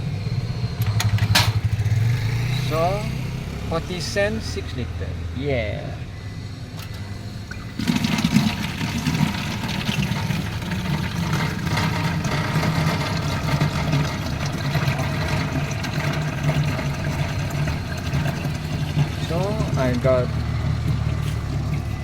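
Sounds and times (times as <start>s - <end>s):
water vending machine pump humming: 5.5s - 22.0s
water pouring into bottle: 7.5s - 22.0s.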